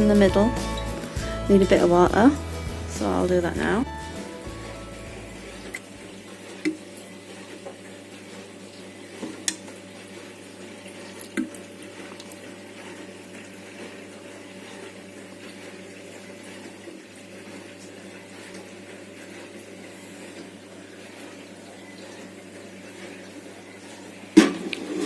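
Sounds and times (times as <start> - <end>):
water trickling onto seedlings: 5.7 - 24.2.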